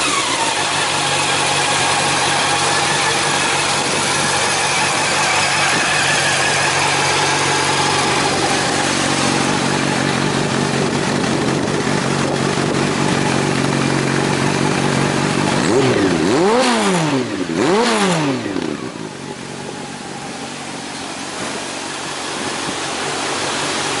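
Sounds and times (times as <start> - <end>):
motorcycle engine idling and revving: 0.0 - 24.0.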